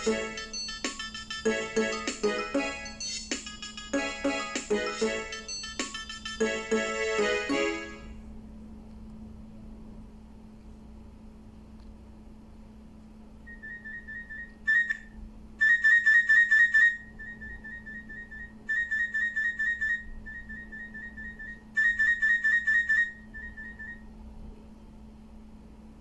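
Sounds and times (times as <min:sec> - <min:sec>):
rapid electronic ringtone beeping: 0:00.0 - 0:08.0.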